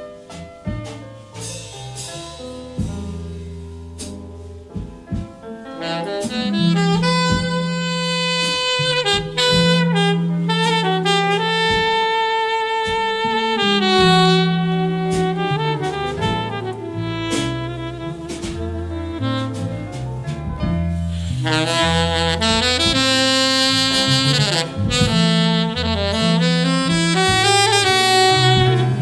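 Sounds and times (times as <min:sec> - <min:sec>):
bass and drums: 0:00.0 - 0:29.0
saxophone long held notes: 0:05.8 - 0:19.9, 0:21.2 - 0:29.0.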